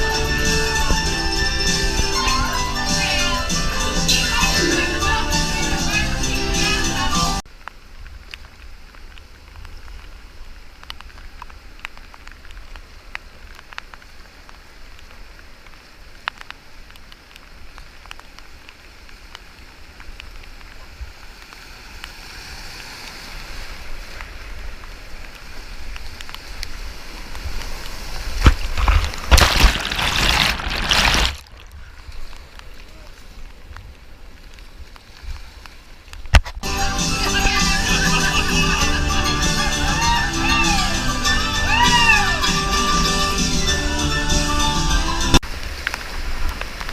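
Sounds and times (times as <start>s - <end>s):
whitewater rushing and splashing: 0.0s - 46.9s
sharp drip-like ticks: 7.5s - 23.2s, 24.0s - 28.6s.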